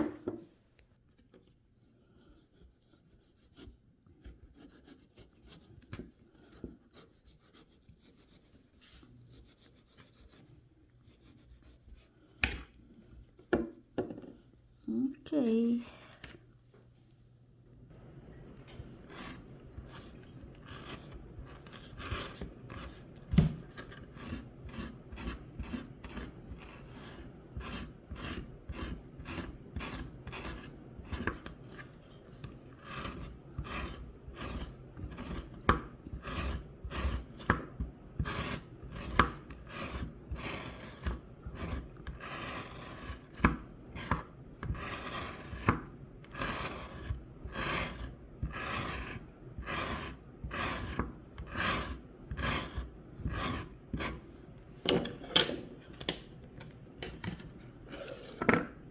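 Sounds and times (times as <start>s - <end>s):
scraping aloe leaf by hand: 19.0s - 54.2s.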